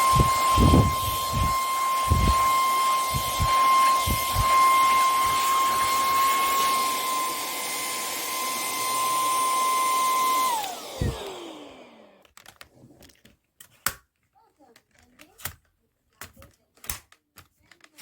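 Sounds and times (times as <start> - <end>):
vacuum cleaner whine: 0.0 - 12.3.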